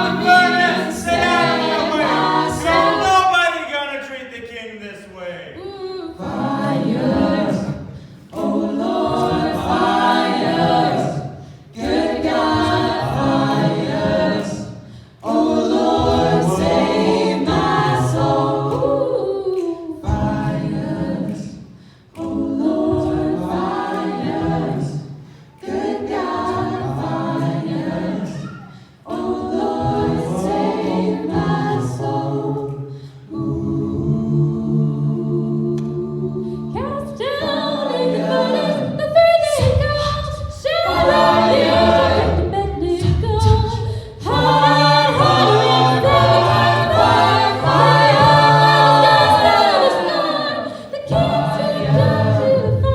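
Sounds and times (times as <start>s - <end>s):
a cappella vocal group singing: 0.0s - 3.7s, 5.2s - 52.9s
singers breathing: 7.9s - 8.3s, 11.4s - 11.7s, 14.8s - 15.2s, 21.7s - 22.1s, 25.2s - 25.6s, 28.6s - 29.1s, 32.9s - 33.3s, 43.8s - 44.2s.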